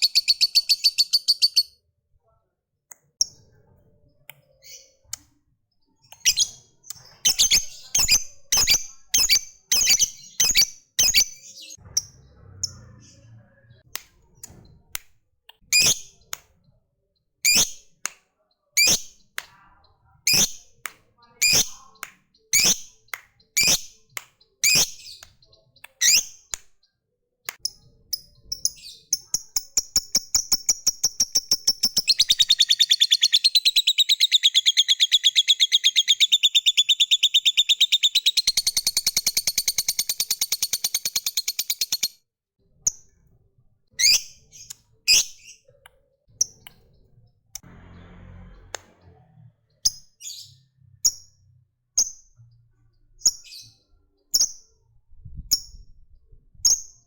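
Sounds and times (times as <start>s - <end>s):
rapid chattering bird trill: 0.0s - 1.7s, 6.2s - 12.2s, 28.2s - 42.2s
bird chirping: 0.0s - 2.4s, 3.2s - 14.9s, 15.6s - 43.3s, 43.9s - 57.0s.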